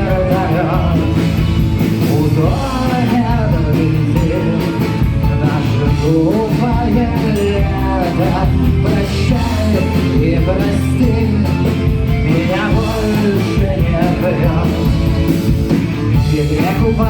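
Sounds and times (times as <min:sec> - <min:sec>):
live rock band: 0:00.0 - 0:17.0.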